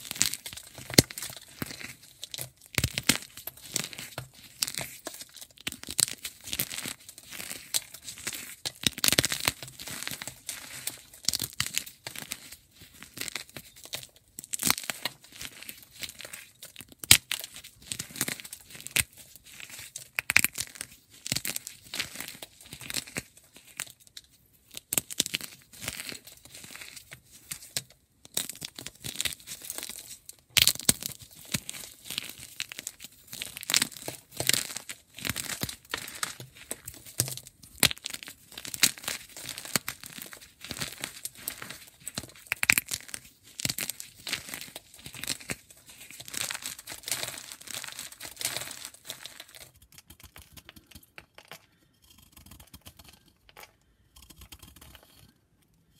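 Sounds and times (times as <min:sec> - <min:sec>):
chalk crunching and scraping: 0:38.1 - 0:49.8.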